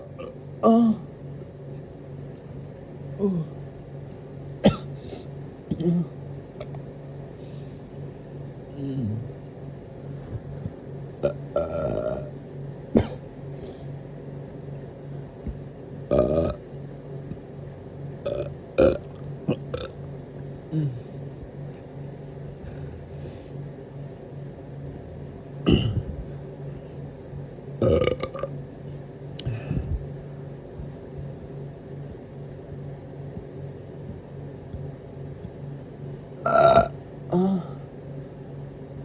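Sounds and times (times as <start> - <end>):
person burping: 0.1 - 1.0, 5.7 - 6.7, 11.2 - 12.3, 13.0 - 13.2, 25.7 - 26.1, 27.8 - 28.5, 36.4 - 37.8.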